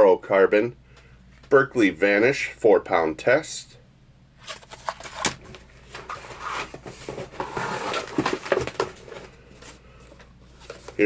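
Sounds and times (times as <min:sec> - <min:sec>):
packaging rustling and crinkling: 0:04.4 - 0:11.0.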